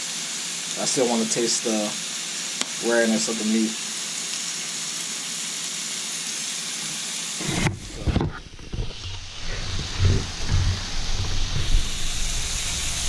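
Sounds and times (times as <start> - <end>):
meat sizzling: 0.0 - 13.0
low thumps and rumbling: 7.4 - 13.0.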